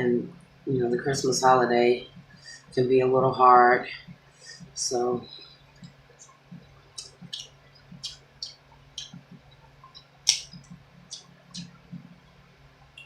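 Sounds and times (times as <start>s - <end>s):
wet eating clicks and crunches: 9.9s - 11.8s.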